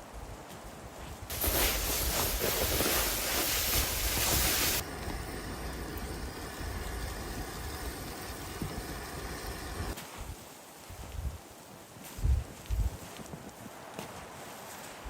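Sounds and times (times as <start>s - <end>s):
loud wind hiss: 1.1s - 11.4s
wind buffeting microphone: 1.1s - 11.4s, 12.2s - 13.1s.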